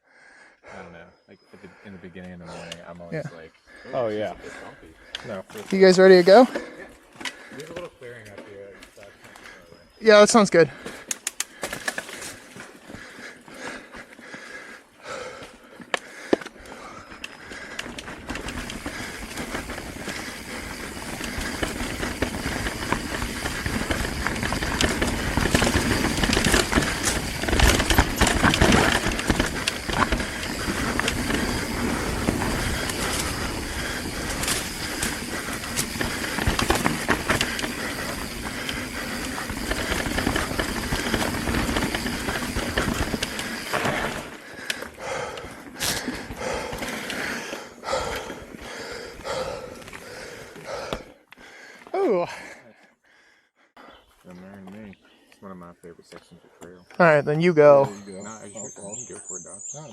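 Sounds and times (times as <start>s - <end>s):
bike tyres rumbling: 3.7s - 52.6s
bike clattering over rocks: 17.4s - 51.0s.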